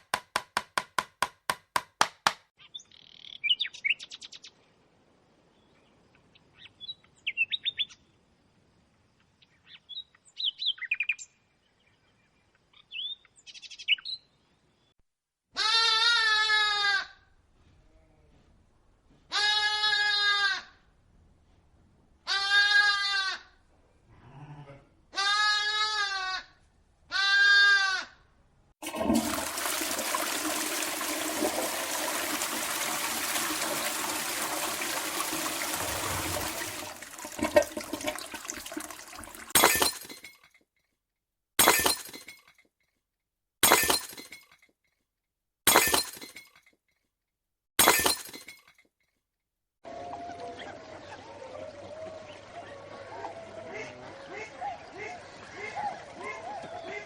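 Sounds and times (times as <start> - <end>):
animal bleating: 15.6 - 17.2, 19.3 - 20.7, 22.3 - 23.5, 24.1 - 26.5, 27.1 - 28.2.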